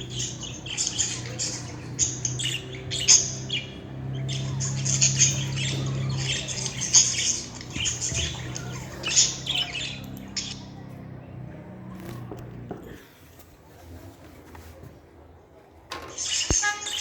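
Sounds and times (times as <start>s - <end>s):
budgerigar chirping and squawking: 0.0s - 10.9s, 16.2s - 17.0s.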